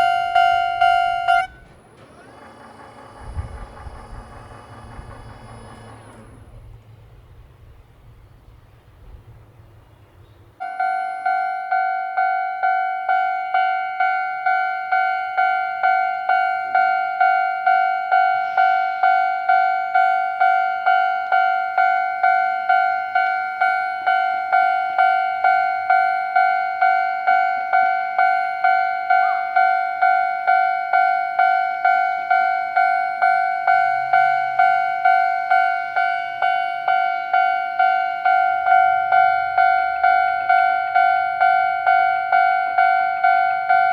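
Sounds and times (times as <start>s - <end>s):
level crossing warning bell: 0.0s - 6.3s, 10.6s - 43.9s.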